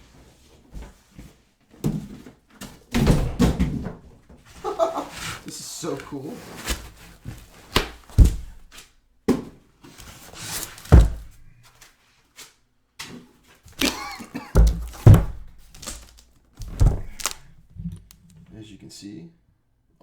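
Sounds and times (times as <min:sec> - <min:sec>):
boxes thunking on a table: 0:01.8 - 0:04.5, 0:06.7 - 0:08.7, 0:10.6 - 0:11.5, 0:13.7 - 0:18.1
rustling of box wrapping: 0:04.3 - 0:09.0, 0:09.8 - 0:18.3.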